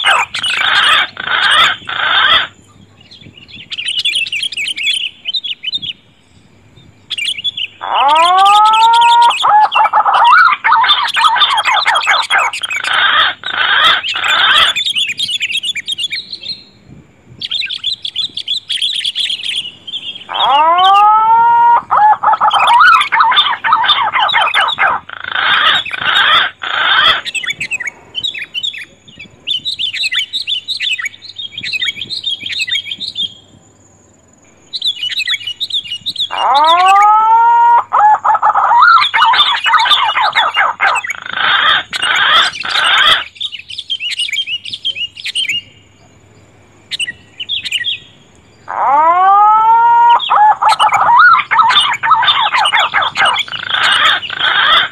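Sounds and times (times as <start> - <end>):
bulbul chirping: 50.1 - 54.9.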